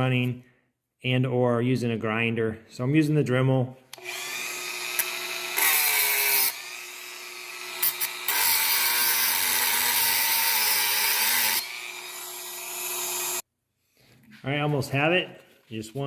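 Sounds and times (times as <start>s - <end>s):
rotary tool whining: 4.0s - 13.4s.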